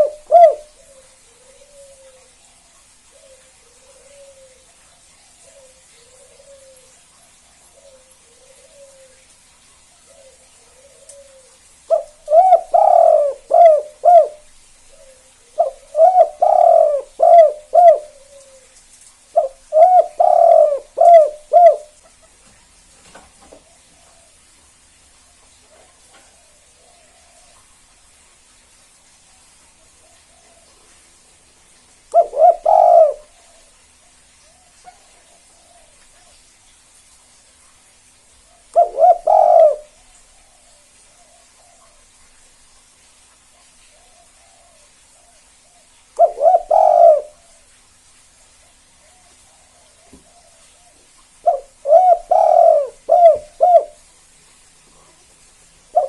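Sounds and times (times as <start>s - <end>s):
dove cooing: 0.0s - 2.4s, 3.1s - 9.3s, 10.0s - 22.4s, 32.1s - 33.8s, 38.5s - 42.1s, 43.9s - 47.7s, 48.7s - 54.1s.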